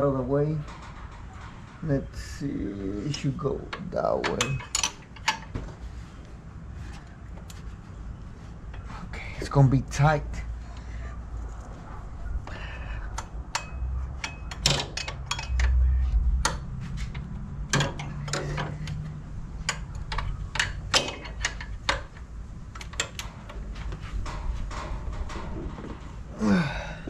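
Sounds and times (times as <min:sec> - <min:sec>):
wrench clicking and knocking: 0:03.7 - 0:05.6, 0:12.5 - 0:25.6.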